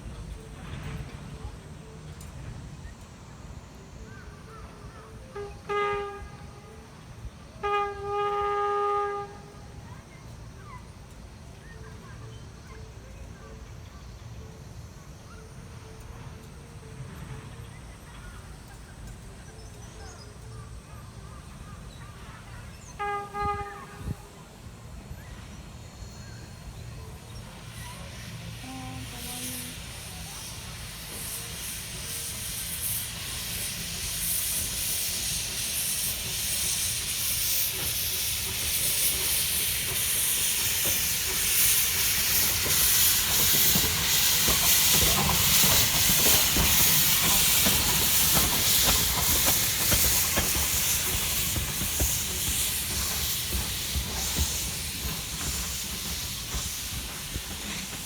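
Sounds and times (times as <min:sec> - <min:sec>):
locomotive rumble: 0:00.0 - 0:58.0
locomotive whistle toot: 0:05.3 - 0:06.9, 0:07.6 - 0:09.8, 0:22.8 - 0:25.6
steam hissing: 0:21.2 - 0:58.0.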